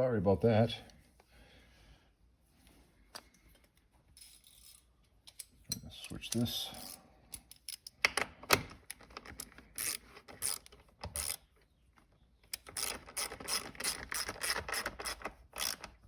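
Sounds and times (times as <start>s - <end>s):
ratchet wrench clicking: 9.4s - 11.4s, 12.5s - 16.0s.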